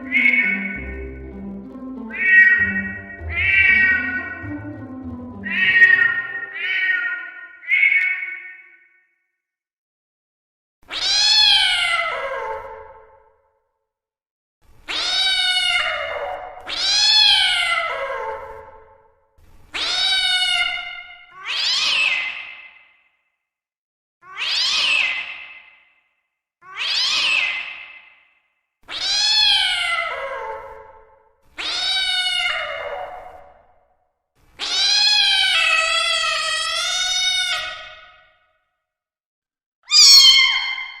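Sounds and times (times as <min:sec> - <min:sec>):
cat meowing: 0:00.0 - 0:00.8, 0:02.1 - 0:04.4, 0:05.5 - 0:08.7, 0:10.9 - 0:12.6, 0:14.9 - 0:17.8, 0:19.8 - 0:22.3, 0:24.3 - 0:25.2, 0:26.6 - 0:27.6, 0:28.9 - 0:30.6, 0:31.6 - 0:33.4, 0:34.6 - 0:38.0, 0:39.9 - 0:41.0.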